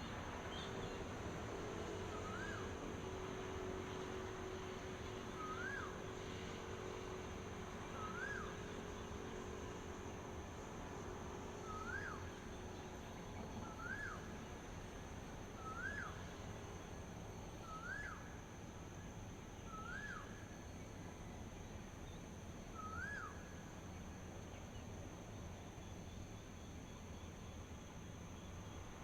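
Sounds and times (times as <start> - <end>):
bird calling: 11.6 - 12.2, 22.8 - 23.4.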